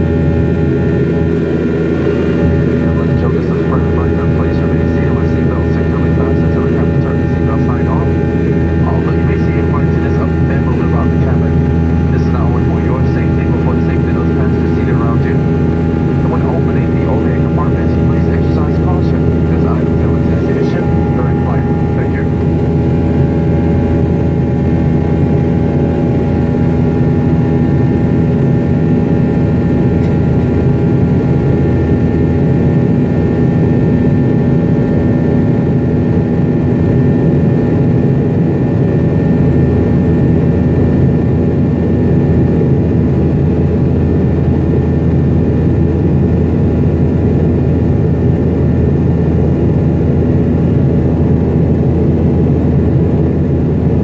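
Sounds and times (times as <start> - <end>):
jet engines droning in cabin: 0.0 - 54.0.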